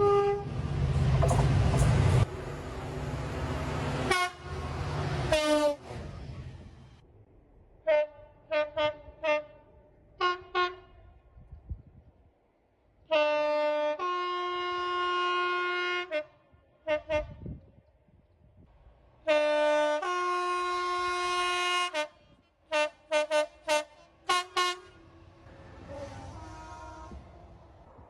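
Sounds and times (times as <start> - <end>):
two-tone locomotive horn: 0.0 - 0.6, 4.0 - 6.0, 7.8 - 11.0, 13.1 - 17.5, 19.2 - 27.6.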